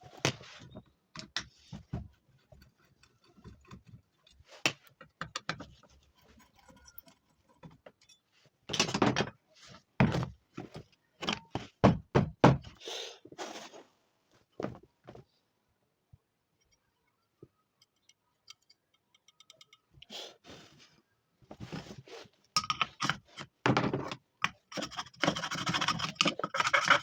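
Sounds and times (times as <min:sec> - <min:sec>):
tools and parts clicking and clinking: 0:02.4 - 0:09.4, 0:17.8 - 0:20.1, 0:22.5 - 0:27.0.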